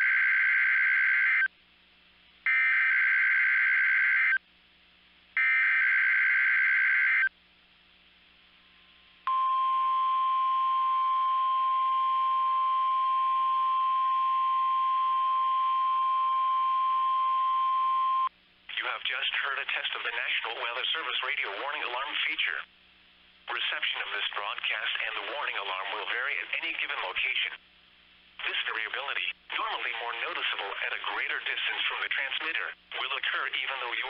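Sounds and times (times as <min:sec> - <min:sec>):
steady warning alarm tone: 0:09.3 - 0:18.3.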